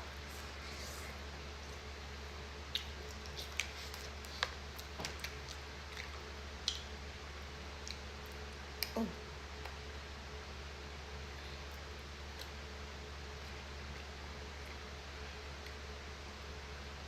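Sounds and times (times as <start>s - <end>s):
low electrical hum: 0.0s - 17.0s
person chewing: 2.7s - 6.9s.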